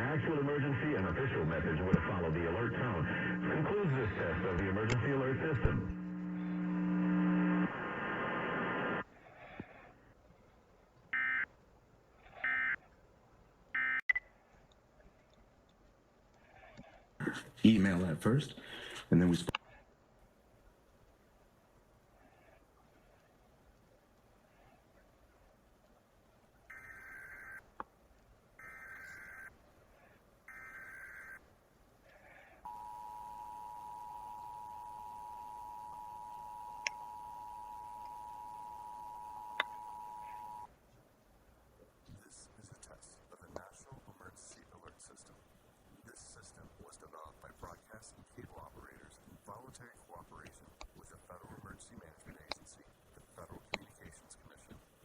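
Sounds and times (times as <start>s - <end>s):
click: 4.6s - 5.0s, 39.5s - 39.8s, 50.4s - 51.0s
raspy data bursts: 32.7s - 40.7s
steady buzzy alert tone: 32.7s - 40.7s.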